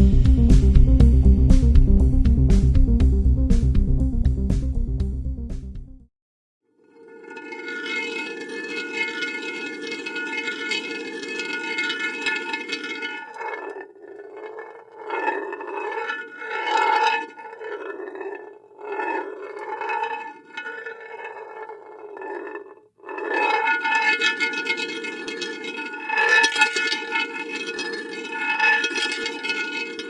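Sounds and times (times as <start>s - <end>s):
marble rolling on metal: 6.7s - 30.0s.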